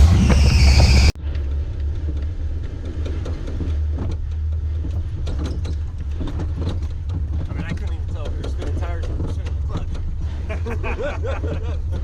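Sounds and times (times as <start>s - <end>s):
high squeal: 0.0s - 1.2s
engine revving and rumbling: 0.0s - 12.0s.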